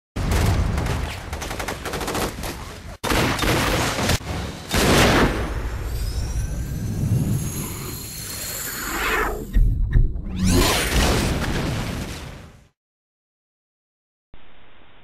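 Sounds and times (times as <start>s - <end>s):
rapid gunfire: 0.2s - 5.3s.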